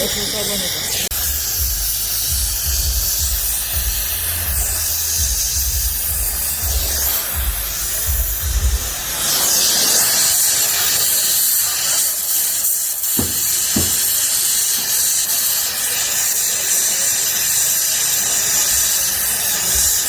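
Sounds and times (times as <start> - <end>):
welding torch flame hissing: 0.0 - 20.0
short knocks: 13.2 - 14.2.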